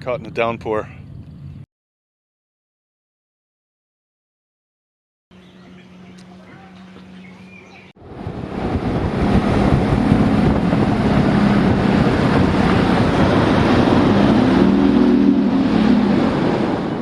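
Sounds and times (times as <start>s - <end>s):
outboard motor running: 5.3s - 16.6s
wind noise on microphone: 7.5s - 17.0s.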